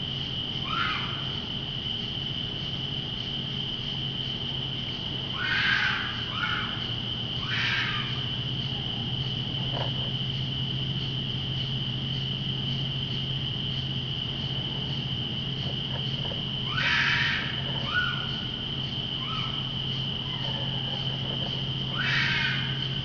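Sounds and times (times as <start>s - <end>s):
insect trill: 0.0s - 23.0s
low steady hum: 0.0s - 23.0s
animal harsh cry: 5.4s - 6.8s, 7.4s - 8.2s, 16.6s - 18.4s, 21.9s - 22.9s.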